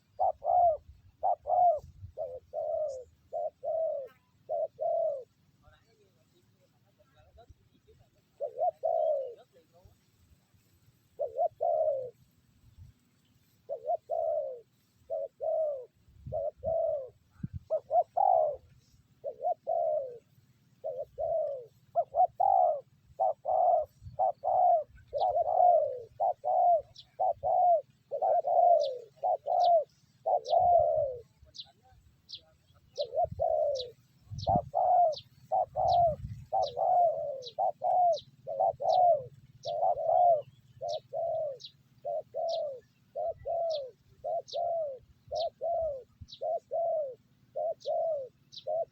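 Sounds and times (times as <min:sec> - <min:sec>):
small bird chirping: 0:00.0 - 0:09.8, 0:20.8 - 0:48.9
doves cooing: 0:00.0 - 0:10.0, 0:11.0 - 0:48.9.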